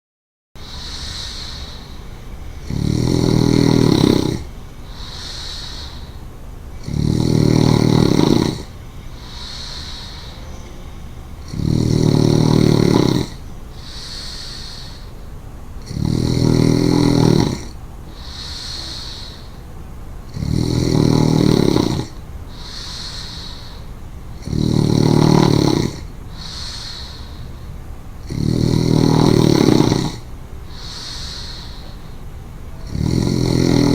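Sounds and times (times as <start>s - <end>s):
woman snoring: 0.6s - 6.2s, 6.8s - 15.2s, 15.8s - 19.6s, 20.3s - 32.2s, 32.8s - 33.9s.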